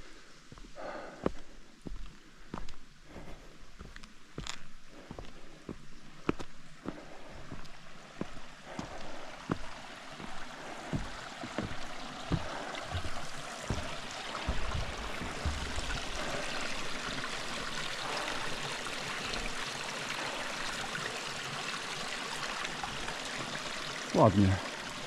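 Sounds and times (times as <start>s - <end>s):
stream rushing over rocks: 4.4s - 25.0s
low thuds: 9.5s - 17.4s.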